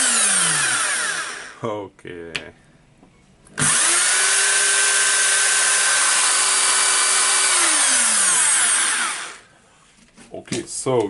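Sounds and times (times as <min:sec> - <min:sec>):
drill motor whining: 0:00.0 - 0:01.6, 0:03.6 - 0:09.5.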